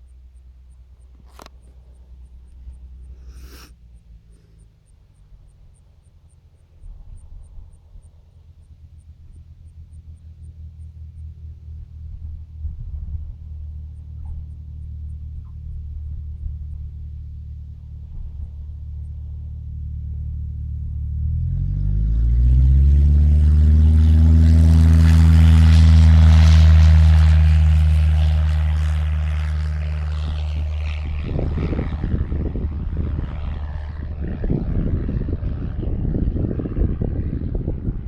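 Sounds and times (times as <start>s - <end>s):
propeller airplane engine: 0.0s - 38.0s
wind buffeting microphone: 25.9s - 38.0s.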